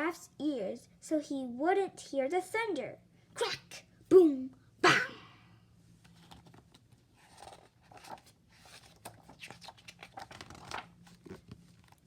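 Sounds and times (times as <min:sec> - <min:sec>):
low steady hum: 0:00.0 - 0:12.0
page turning rustle: 0:06.0 - 0:12.0.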